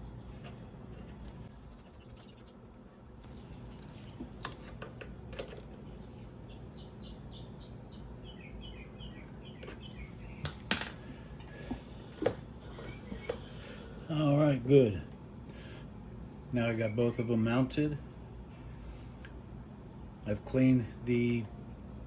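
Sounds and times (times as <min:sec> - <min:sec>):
tools and parts clicking and knocking: 0:03.3 - 0:05.8.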